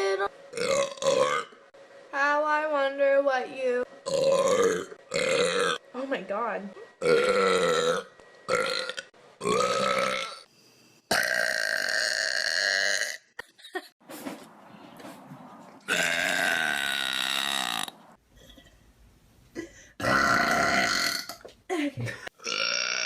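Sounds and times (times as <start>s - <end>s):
person burping loudly: 0.5s - 1.6s, 4.0s - 5.8s, 7.0s - 10.5s, 11.1s - 13.4s, 15.8s - 18.7s, 20.0s - 21.4s, 22.4s - 23.0s.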